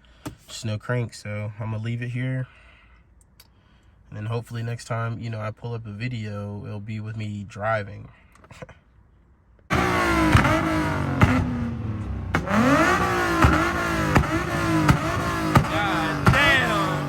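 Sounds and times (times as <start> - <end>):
car engine revving: 9.7 - 17.0.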